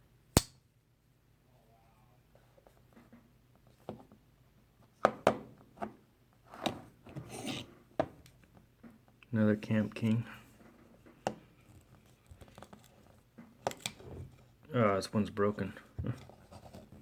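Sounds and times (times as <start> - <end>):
rustling handling noise: 9.6 - 17.0.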